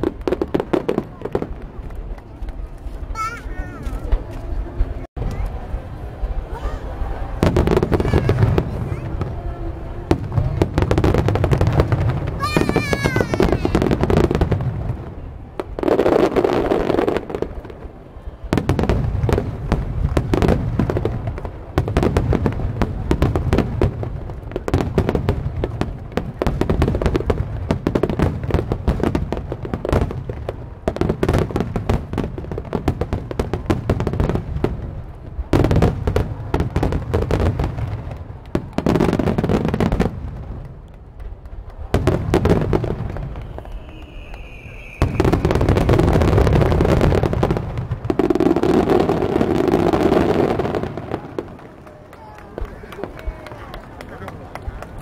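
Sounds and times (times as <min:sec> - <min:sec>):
fireworks bursting and crackling: 0:00.0 - 0:55.0
whistling firework shell: 0:42.9 - 0:46.9.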